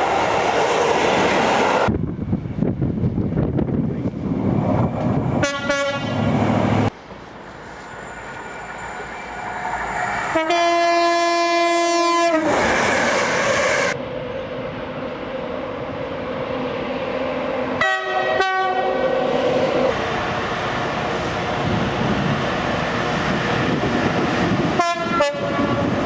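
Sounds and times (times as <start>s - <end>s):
train passing on rails: 0.0s - 26.0s
train horn short toots: 5.4s - 6.2s, 10.3s - 12.5s, 17.8s - 19.0s, 24.8s - 26.0s
train horn blast: 5.4s - 6.3s, 10.2s - 12.5s, 17.8s - 19.0s, 24.8s - 26.0s.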